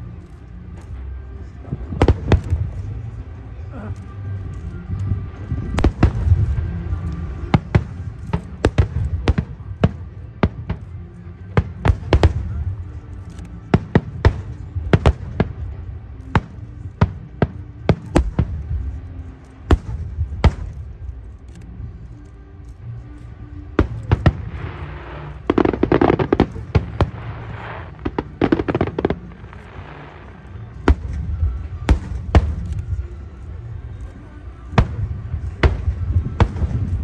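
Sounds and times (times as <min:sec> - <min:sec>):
firework crackling: 0:04.5 - 0:22.1, 0:23.2 - 0:37.0
firework bangs: 0:05.7 - 0:10.8, 0:23.8 - 0:33.0.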